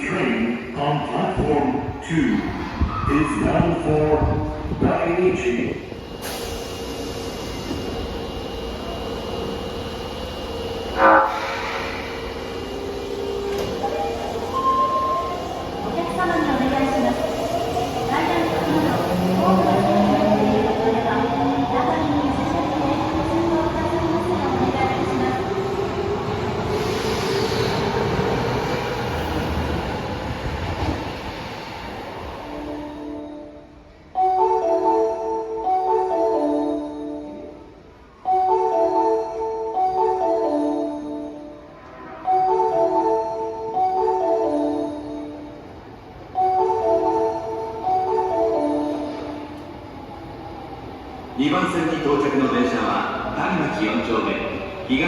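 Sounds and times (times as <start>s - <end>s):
subway train rumbling: 0.0s - 55.0s
train horn blast: 11.0s - 11.6s, 41.8s - 42.5s.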